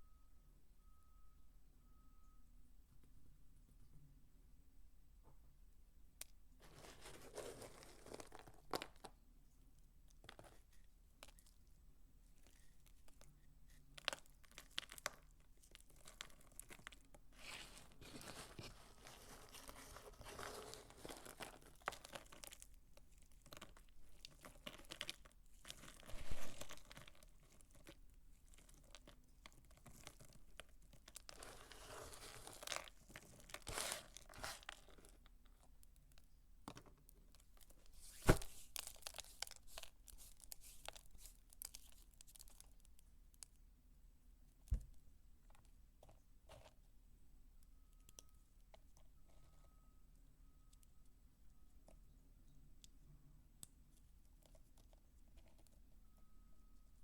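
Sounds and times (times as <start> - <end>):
dry soap crunching: 6.2 - 9.2, 9.9 - 43.6.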